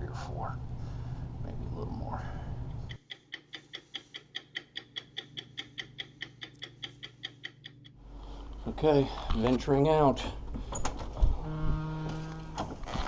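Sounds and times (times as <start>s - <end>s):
rapid even ticking: 2.9s - 8.0s.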